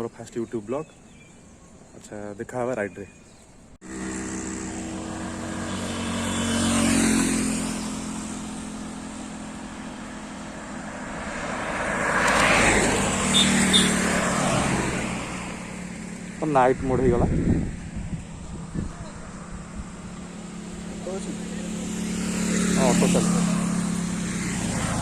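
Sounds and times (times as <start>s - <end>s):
road and wind noise: 0.0s - 25.0s
motorcycle engine running: 3.8s - 11.0s, 15.2s - 25.0s.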